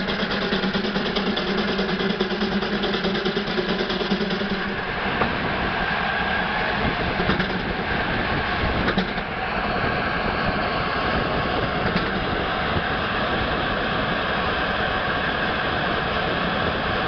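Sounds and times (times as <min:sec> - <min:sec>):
sharp knocks: 0:00.0 - 0:05.4, 0:07.2 - 0:07.7
steam engine clatter: 0:00.0 - 0:05.4, 0:06.9 - 0:09.4, 0:11.4 - 0:12.8.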